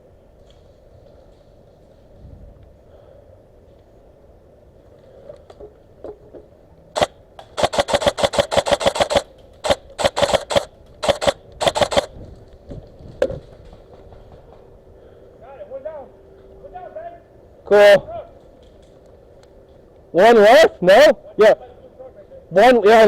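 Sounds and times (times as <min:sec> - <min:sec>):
airsoft gun firing bursts: 0:07.0 - 0:12.2.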